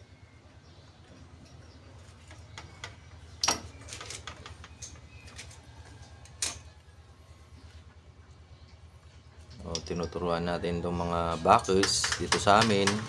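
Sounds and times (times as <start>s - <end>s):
low steady hum: 0.0s - 13.0s
metallic clicks and knocks: 11.6s - 13.0s.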